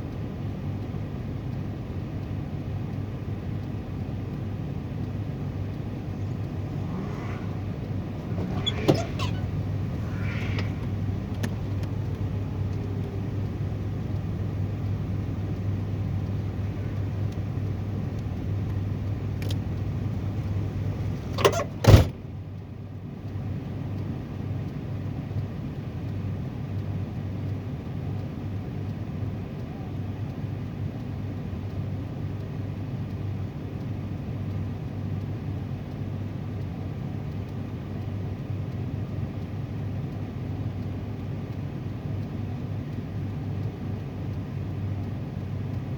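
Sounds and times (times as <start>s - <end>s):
car engine running: 3.4s - 22.2s.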